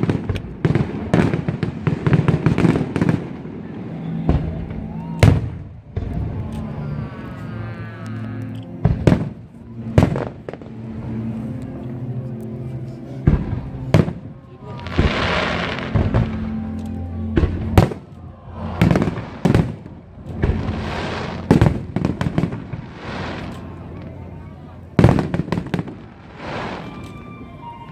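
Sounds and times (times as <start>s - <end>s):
fireworks bangs: 0.0s - 6.4s, 13.2s - 16.7s, 17.3s - 27.9s
fireworks crackling: 0.0s - 6.9s, 13.2s - 27.9s
music playing: 2.4s - 27.9s.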